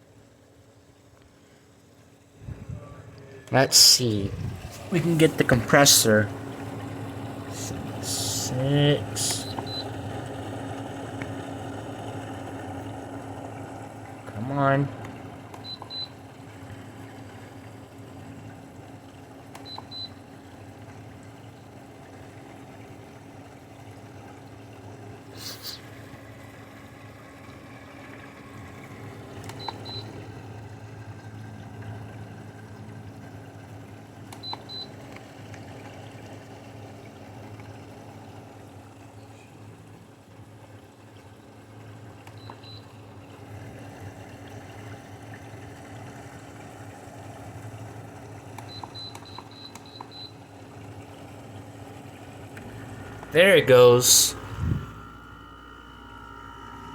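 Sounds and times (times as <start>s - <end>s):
air conditioner fan humming: 0.0s - 56.9s
short electronic beeps: 9.3s - 9.9s.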